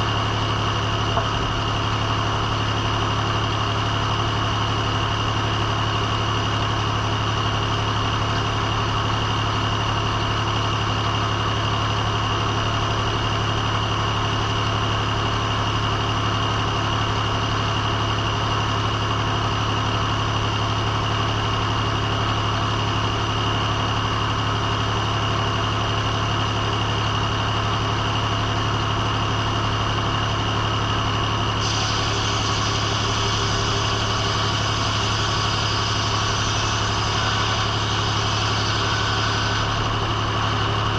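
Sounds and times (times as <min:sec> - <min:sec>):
engine drone: 0:00.0 - 0:40.9
high saw whine: 0:31.5 - 0:40.9.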